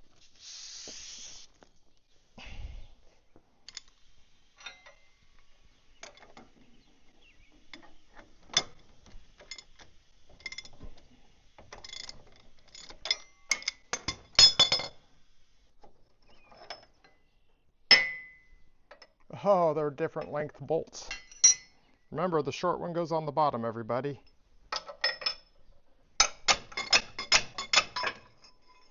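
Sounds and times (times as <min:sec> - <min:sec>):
metal tools clinking: 0:04.6 - 0:05.2, 0:09.4 - 0:10.9, 0:11.7 - 0:15.0, 0:16.4 - 0:17.2, 0:21.0 - 0:21.8, 0:24.2 - 0:25.6, 0:26.2 - 0:28.9.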